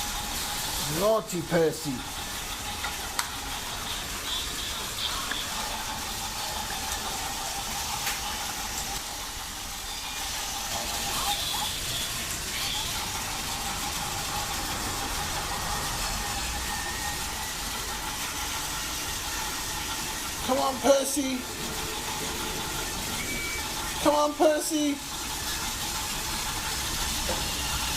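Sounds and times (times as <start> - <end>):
toy train motor whine: 0.0 - 27.9.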